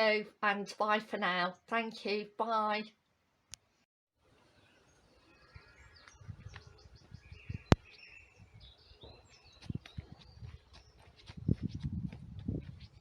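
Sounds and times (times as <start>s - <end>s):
small birds chirping: 4.5s - 13.0s.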